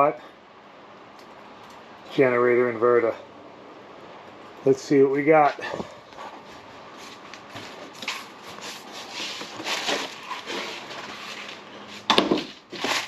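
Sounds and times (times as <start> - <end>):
cardboard packaging rustling: 6.4 - 13.0.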